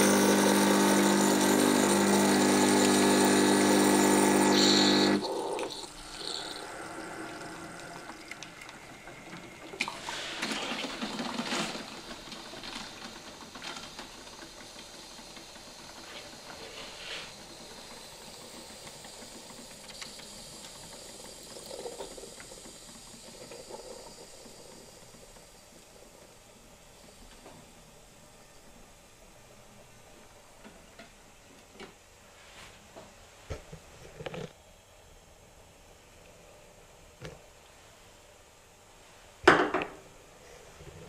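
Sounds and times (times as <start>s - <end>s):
coffee machine pump running: 0.0s - 28.1s.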